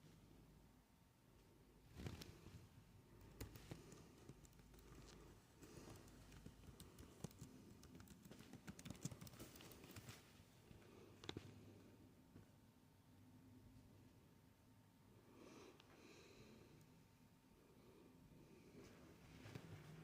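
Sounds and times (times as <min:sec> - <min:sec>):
faint typing on computer keyboard: 0:03.1 - 0:11.6.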